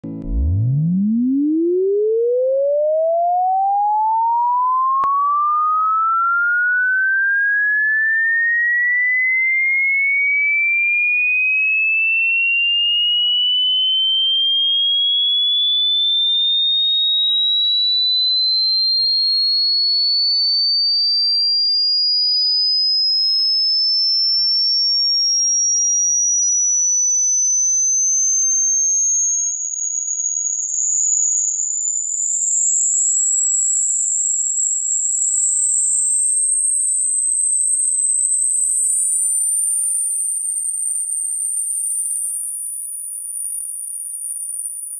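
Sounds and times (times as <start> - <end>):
rising sine tone sweep: 0.0 - 8.6, 13.0 - 15.6, 33.4 - 44.9.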